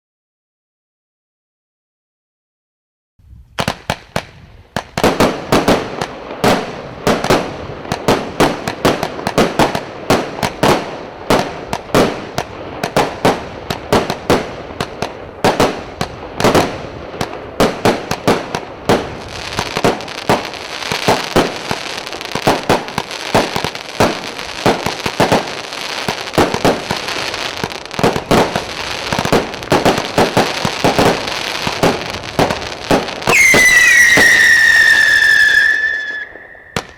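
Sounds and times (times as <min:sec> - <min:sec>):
whistling firework shots: 0:03.6 - 0:36.9
high hiss and crackle: 0:11.4 - 0:35.0.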